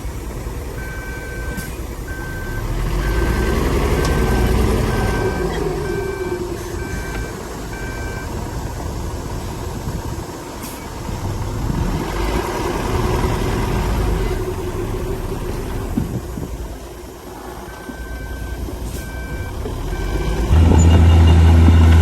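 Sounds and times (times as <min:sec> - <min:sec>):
heavy diesel engine rumbling: 0:00.0 - 0:22.0
reversing alarm beep: 0:00.8 - 0:08.4, 0:17.7 - 0:22.0.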